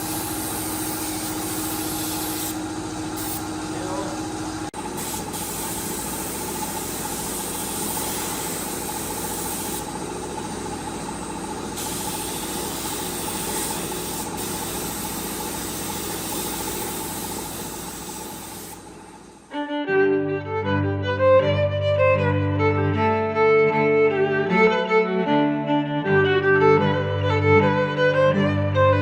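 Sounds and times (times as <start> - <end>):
machine hissing and humming: 0.0 - 19.6.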